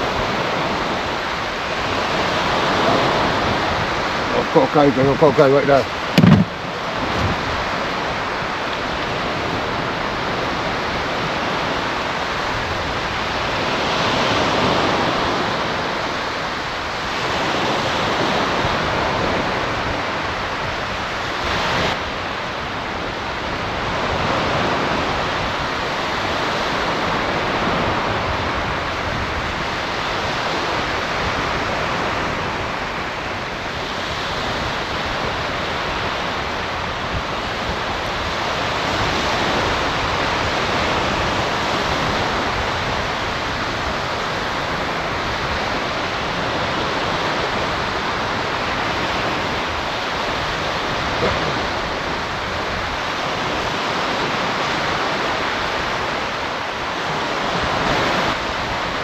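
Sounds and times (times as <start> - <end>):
surf washing onto beach: 0.0 - 59.0
wind on microphone: 0.0 - 59.0.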